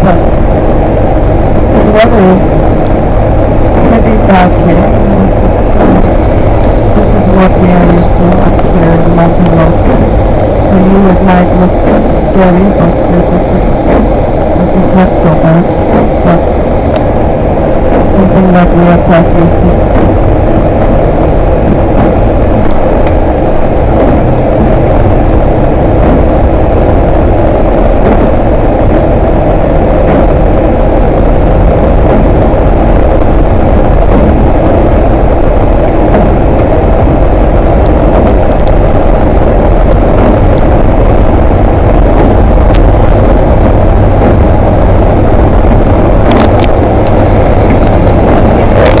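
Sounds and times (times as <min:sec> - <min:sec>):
bus engine and road rumble: 0:00.0 - 0:49.0.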